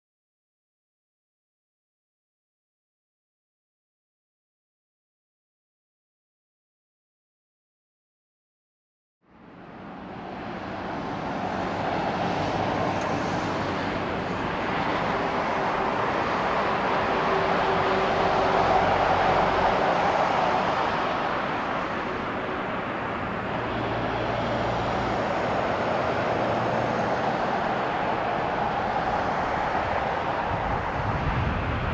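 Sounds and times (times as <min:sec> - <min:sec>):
jet airliner roar overhead: 0:09.4 - 0:31.9.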